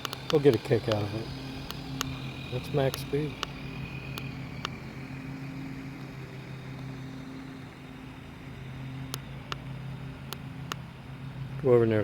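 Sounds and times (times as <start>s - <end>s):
sharp clicks: 0.0s - 4.9s, 9.1s - 9.7s
low motor hum: 0.0s - 12.0s.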